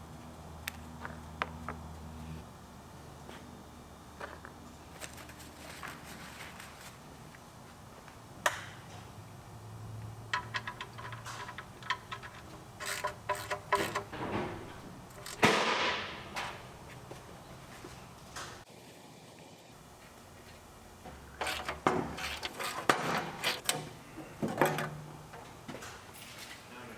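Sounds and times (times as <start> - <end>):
metal tools clinking: 10.3 - 15.5, 21.4 - 26.7.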